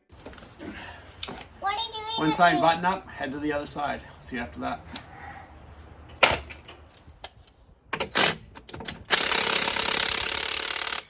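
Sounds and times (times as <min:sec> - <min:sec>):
impact wrench hammering: 0:09.1 - 0:11.0.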